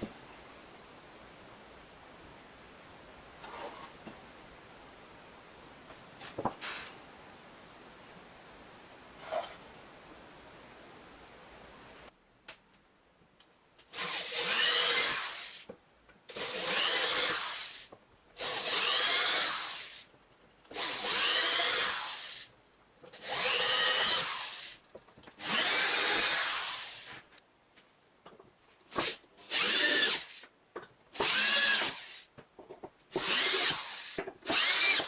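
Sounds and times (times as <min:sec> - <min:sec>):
electric drill motor whine: 0:29.5 - 0:30.4, 0:31.2 - 0:32.1, 0:33.2 - 0:35.0.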